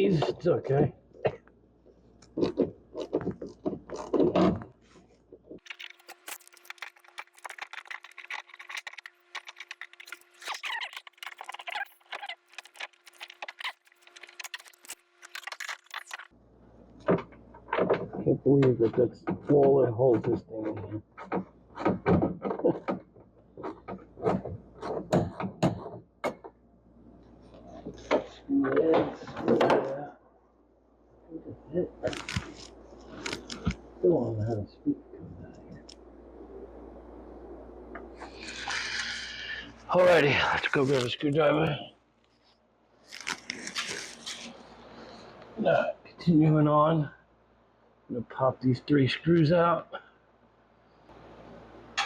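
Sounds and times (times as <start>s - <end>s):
plastic parts clicking and knocking: 5.5s - 16.2s
low mumbled speech: 18.1s - 21.0s
faint steady hum: 26.4s - 52.0s.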